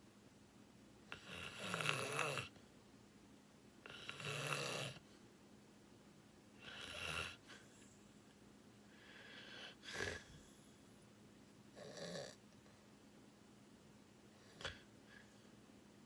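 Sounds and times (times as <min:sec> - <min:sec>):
faint steady hum: 0:00.0 - 0:16.0
person snoring: 0:03.9 - 0:05.0
heavy breathing: 0:08.8 - 0:10.8.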